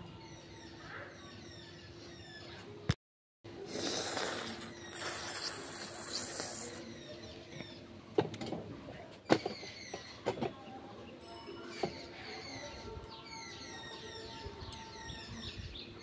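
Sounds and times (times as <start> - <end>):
person blowing nose: 3.7 - 6.8.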